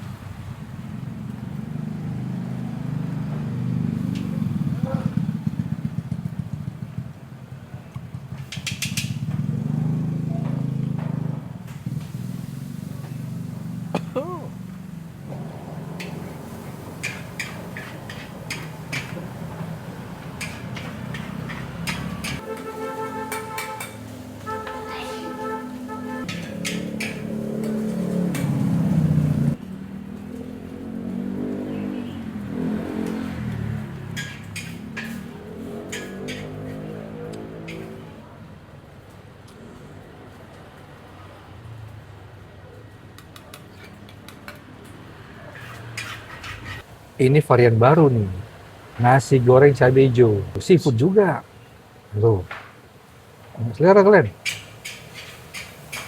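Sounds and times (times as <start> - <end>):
vehicle engine revving: 0.0 - 38.2.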